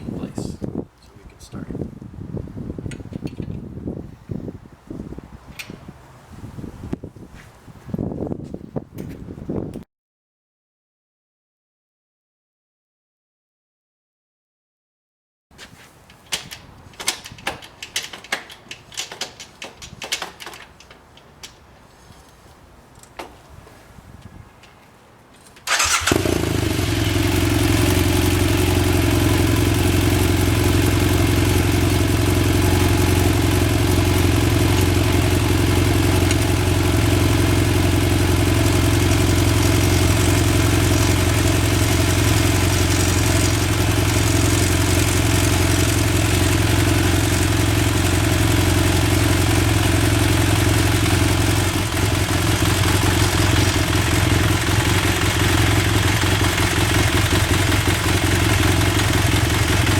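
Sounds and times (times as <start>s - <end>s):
motorcycle engine starting and idling: 16.1s - 21.6s, 25.4s - 59.9s.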